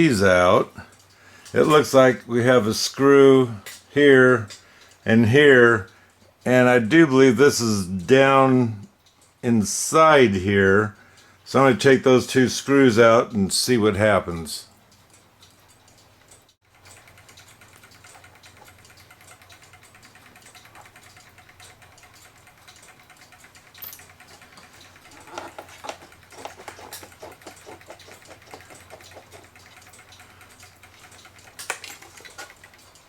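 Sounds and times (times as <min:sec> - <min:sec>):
rapid light metal clicks: 0:14.6 - 0:33.0.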